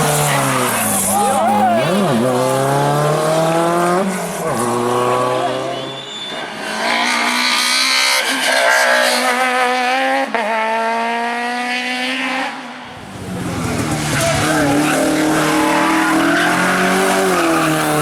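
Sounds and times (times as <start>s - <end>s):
car engine revving: 0.0s - 5.9s, 12.9s - 18.0s.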